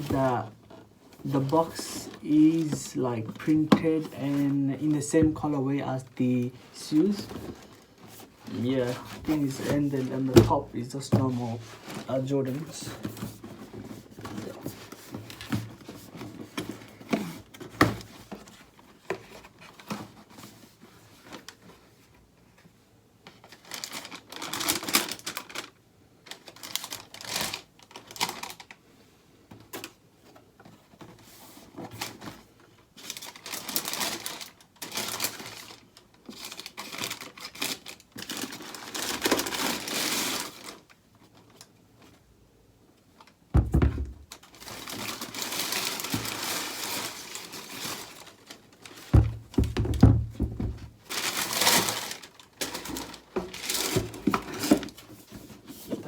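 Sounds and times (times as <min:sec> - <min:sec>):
paper rustling and crinkling: 0:00.0 - 0:28.8, 0:29.6 - 0:42.3, 0:43.1 - 0:56.0
cardboard box clicks and knocks: 0:43.6 - 0:44.4, 0:49.2 - 0:50.9.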